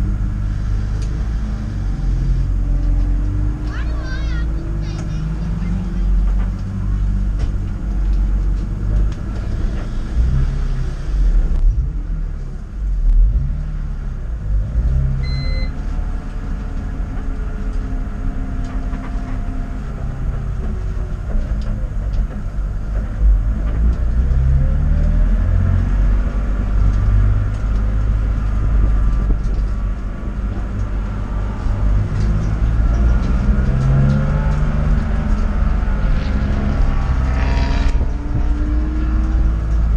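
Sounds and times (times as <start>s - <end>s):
short beep: 15.2s - 15.8s
car engine revving: 22.9s - 39.9s.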